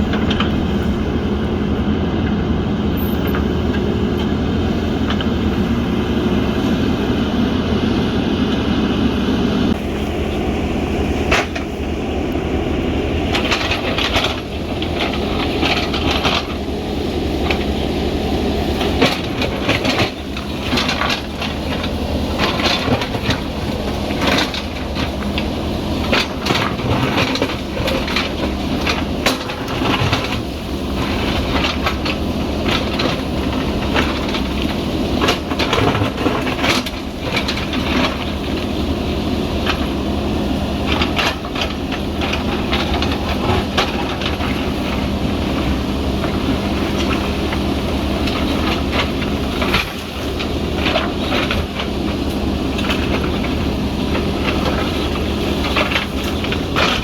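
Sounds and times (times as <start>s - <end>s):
diesel engine running: 0.0s - 57.0s
sharp clanks and knocks: 11.2s - 11.8s.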